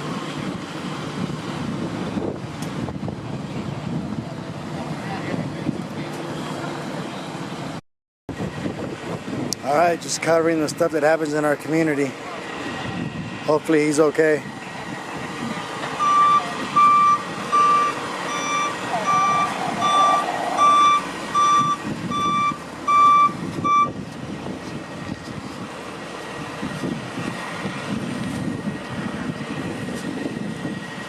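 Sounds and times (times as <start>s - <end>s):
low engine rumble: 0.0s - 31.0s
back-up alarm beeping: 16.0s - 24.0s.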